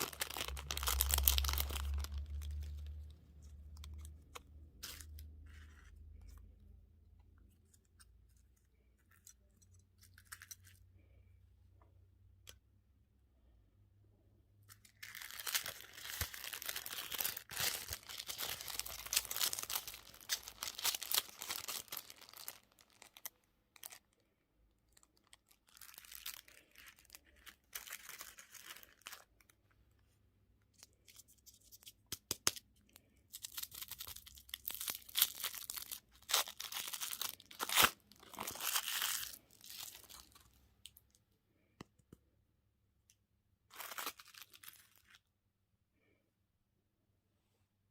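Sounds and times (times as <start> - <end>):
sweets being crunched: 0.0 - 6.4, 14.7 - 24.3, 33.0 - 41.0, 43.7 - 45.2
sweet wrappers crinkling: 0.0 - 6.6, 7.3 - 11.2, 14.6 - 29.7, 30.7 - 41.2, 43.7 - 45.3.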